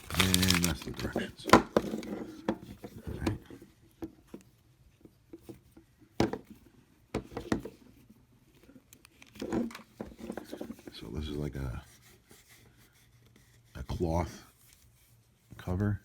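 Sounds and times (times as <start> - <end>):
paper rustling: 0.0 - 2.3.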